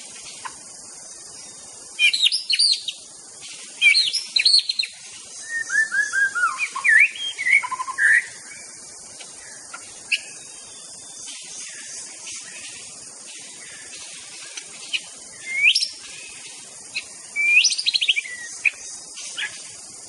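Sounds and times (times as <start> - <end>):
high-pitched hiss: 0.0 - 20.0
bird singing whistles: 2.0 - 3.0, 3.8 - 8.4, 14.9 - 16.1, 17.0 - 18.8.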